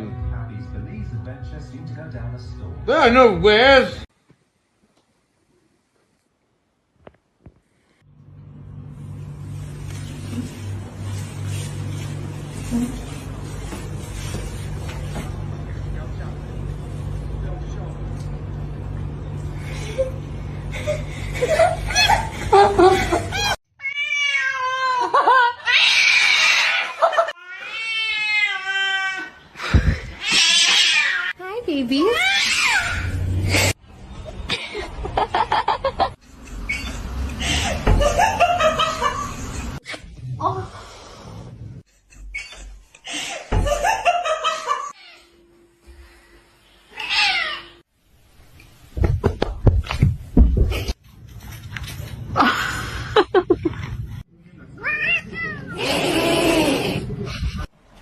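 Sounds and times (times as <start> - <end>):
cat yowling: 23.8 - 29.3, 30.2 - 31.3, 32.1 - 33.2
quick knocks and thumps: 49.0 - 50.9.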